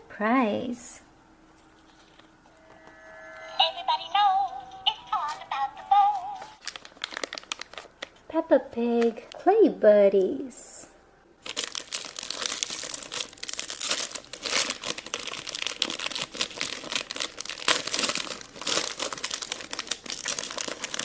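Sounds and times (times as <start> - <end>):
plastic wrapper crinkling: 4.9 - 8.3, 11.4 - 21.0.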